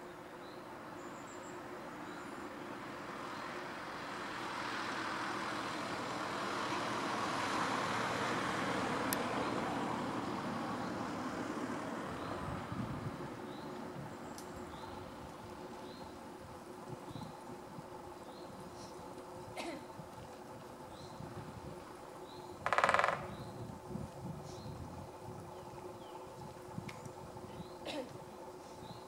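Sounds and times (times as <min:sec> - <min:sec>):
vehicle passing by: 0:02.7 - 0:13.6.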